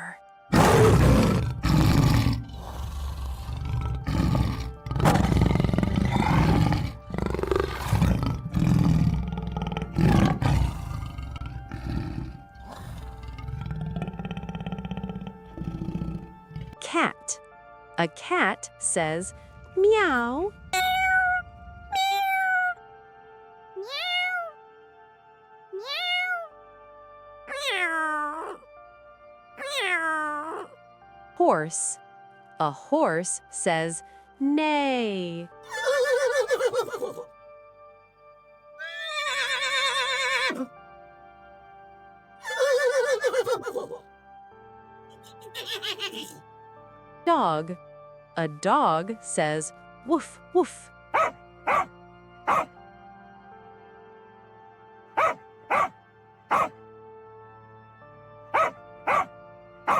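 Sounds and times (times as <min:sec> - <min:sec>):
soft background music: 0:00.0 - 0:59.9
tiger roaring and growling: 0:00.5 - 0:16.8, 0:51.2 - 0:51.9, 0:52.5 - 0:52.7, 0:55.2 - 0:56.7, 0:58.6 - 0:59.3
cat meowing: 0:20.8 - 0:22.8, 0:23.8 - 0:24.5, 0:25.8 - 0:26.5, 0:27.5 - 0:28.6, 0:29.6 - 0:30.7, 0:51.2 - 0:51.9.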